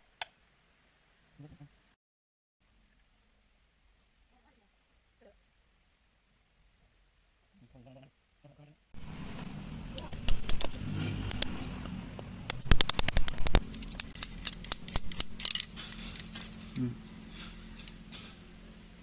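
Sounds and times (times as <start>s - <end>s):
metal clicks of tools: 12.5s - 18.5s.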